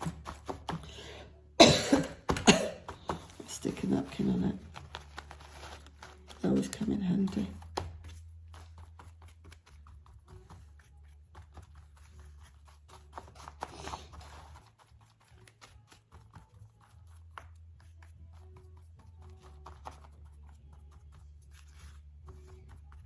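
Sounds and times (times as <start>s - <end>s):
paper napkin rustling: 2.5s - 16.0s.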